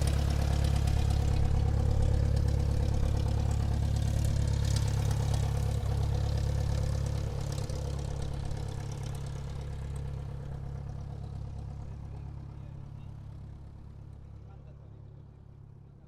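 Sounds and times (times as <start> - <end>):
airplane engines humming: 0.0 - 5.8.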